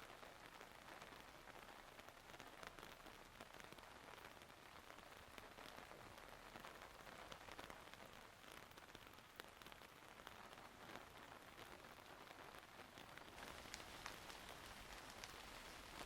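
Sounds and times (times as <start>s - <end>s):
rain drops ticking: 0.0s - 16.0s.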